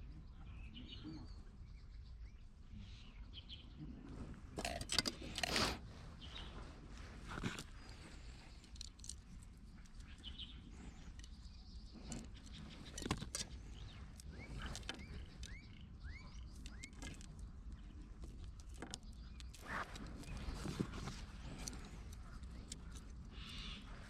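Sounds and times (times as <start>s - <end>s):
rustling: 16.4s - 24.0s.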